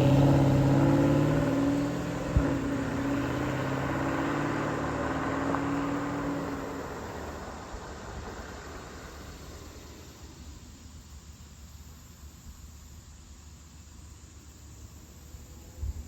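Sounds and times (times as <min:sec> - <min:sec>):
car engine running: 0:00.0 - 0:10.5.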